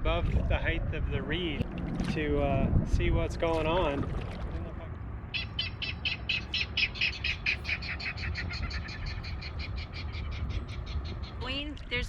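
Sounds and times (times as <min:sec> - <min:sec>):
marsh bird chipping calls: 0:05.2 - 0:11.7.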